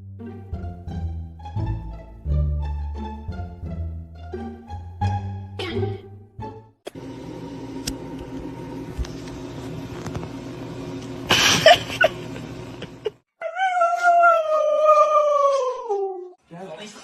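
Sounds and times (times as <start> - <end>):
dog howling: 13.4 - 16.4.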